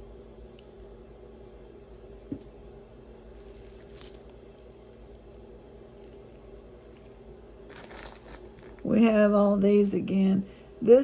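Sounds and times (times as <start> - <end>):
beads and chain clinking: 3.3 - 5.2, 6.0 - 8.9.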